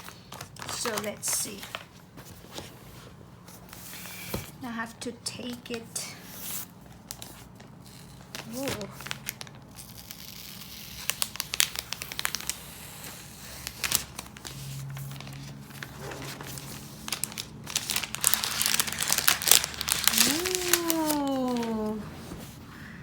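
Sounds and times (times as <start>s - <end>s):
packaging wrap crinkling: 0.0s - 2.4s, 6.8s - 22.6s.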